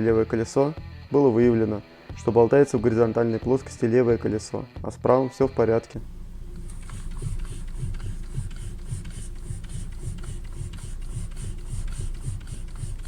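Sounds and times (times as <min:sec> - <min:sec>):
rhythmic mechanical clacking: 0:06.0 - 0:13.0.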